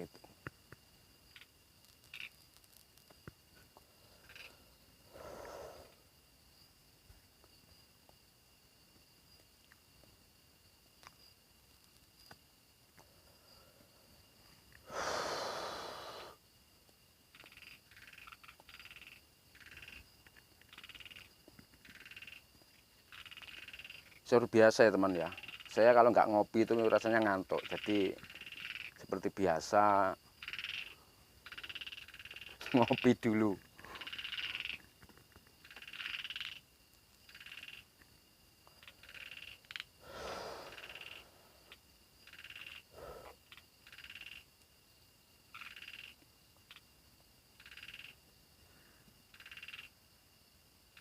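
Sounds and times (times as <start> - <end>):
frog croaking: 1.2 - 2.8, 4.0 - 6.0, 14.7 - 16.4, 17.3 - 44.6, 45.4 - 48.3, 49.3 - 50.0
loud hiss: 5.1 - 6.0, 14.8 - 16.4, 40.0 - 41.5.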